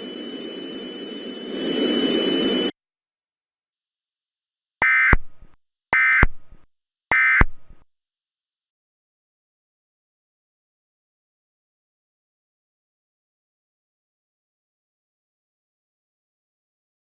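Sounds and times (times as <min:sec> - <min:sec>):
static hiss with high whines: 0:00.0 - 0:02.7
warbling digital data tones: 0:00.0 - 0:02.7.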